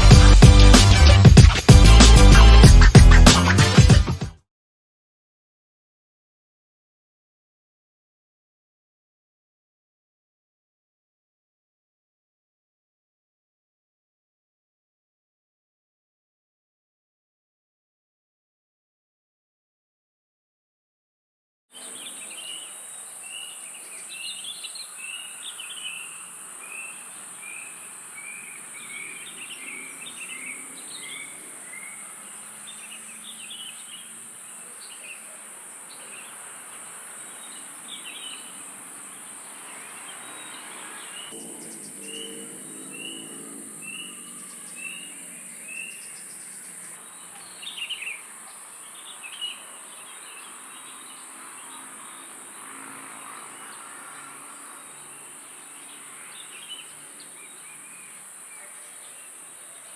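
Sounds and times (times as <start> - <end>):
birds calling: 21.8 - 59.9
insect drone: 21.8 - 59.9.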